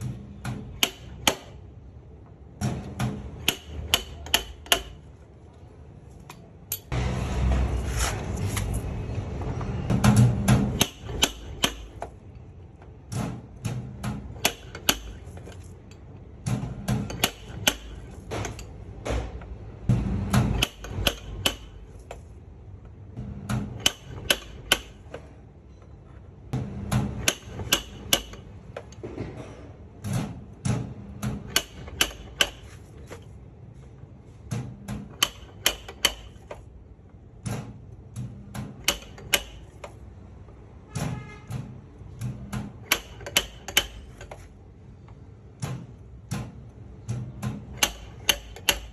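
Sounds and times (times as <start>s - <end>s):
hammer tapping sheet metal: 2.6s - 5.0s, 26.6s - 28.4s, 34.5s - 36.4s, 40.9s - 44.4s, 45.6s - 48.9s.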